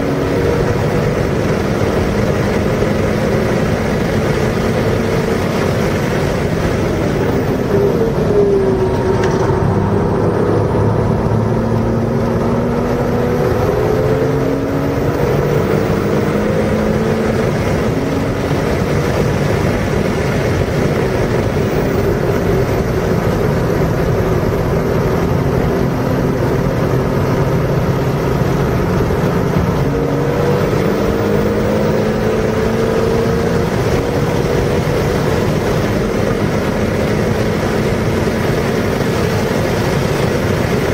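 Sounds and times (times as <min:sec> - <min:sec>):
car engine pulling hard: 0:00.0 - 0:40.9
wind and road noise: 0:00.0 - 0:40.9.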